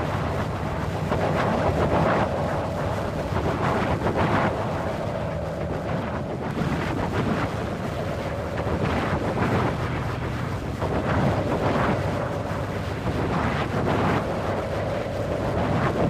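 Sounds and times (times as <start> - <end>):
wind blowing: 0.0 - 16.0.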